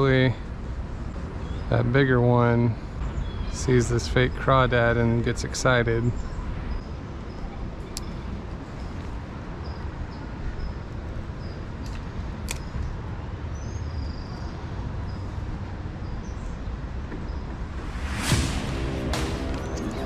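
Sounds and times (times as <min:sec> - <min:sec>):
steady low rumble: 0:17.6 - 0:20.0.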